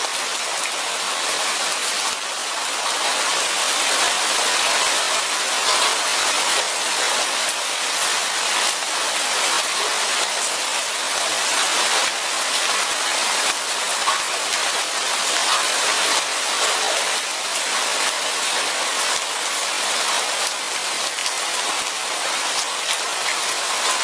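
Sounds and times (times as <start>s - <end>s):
raindrops ticking: 5.6s - 7.6s, 9.6s - 19.3s.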